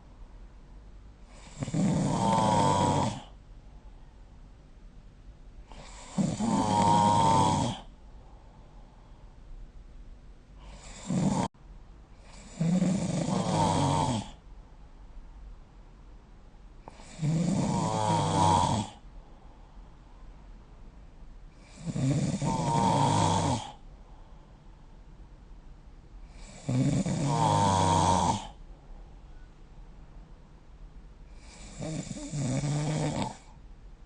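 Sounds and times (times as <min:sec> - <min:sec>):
person snoring: 0:01.3 - 0:03.4, 0:05.7 - 0:07.9, 0:10.6 - 0:11.5, 0:12.3 - 0:14.4, 0:16.9 - 0:19.0, 0:21.6 - 0:23.8, 0:26.3 - 0:28.6, 0:31.3 - 0:33.6.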